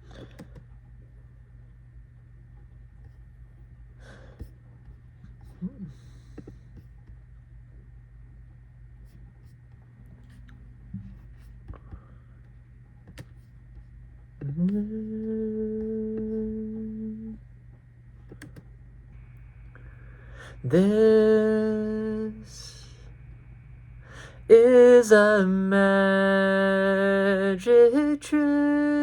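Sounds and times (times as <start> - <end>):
low electrical hum: 0.0 - 29.0
man humming: 5.4 - 6.2, 14.4 - 17.4, 20.4 - 23.1.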